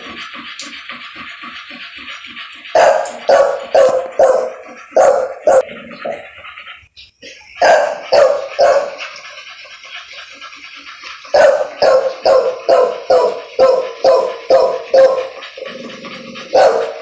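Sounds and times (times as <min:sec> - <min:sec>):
dog barking: 0:02.7 - 0:06.2, 0:07.6 - 0:09.2, 0:11.3 - 0:17.0.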